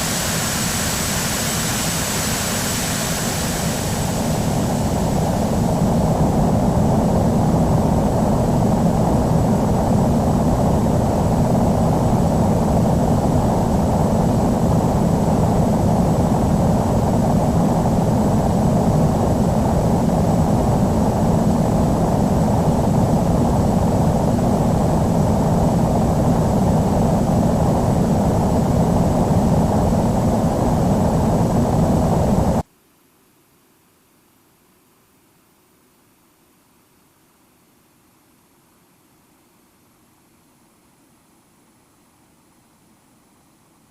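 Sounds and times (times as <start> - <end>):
high steady engine whine: 0.0 - 32.6
jet engines rumbling: 0.0 - 32.6.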